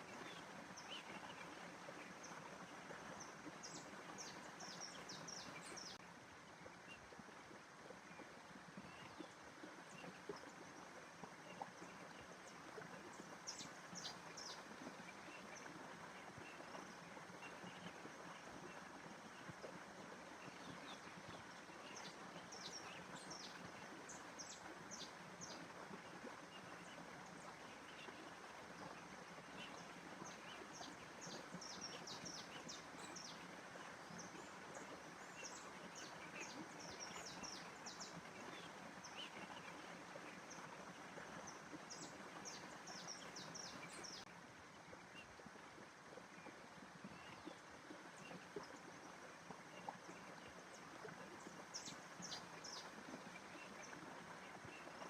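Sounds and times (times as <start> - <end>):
small birds chirping: 3.2 - 6.0.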